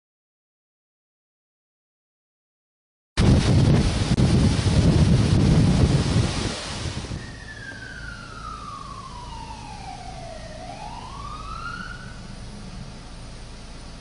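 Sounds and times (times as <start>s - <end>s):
wind noise on microphone: 3.2s - 8.8s
emergency siren wailing: 7.0s - 12.8s.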